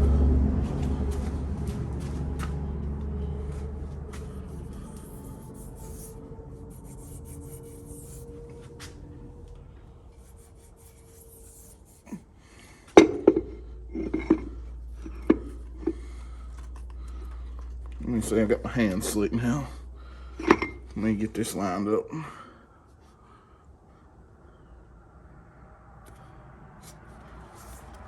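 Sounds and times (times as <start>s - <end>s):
hands rubbing on parts: 4.1s - 8.8s, 10.2s - 12.2s, 26.8s - 28.0s
parts knocking: 13.0s - 16.1s.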